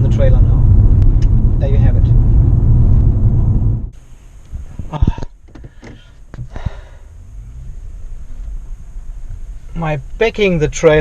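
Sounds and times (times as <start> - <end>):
low road noise rumble in car: 0.0 - 11.0.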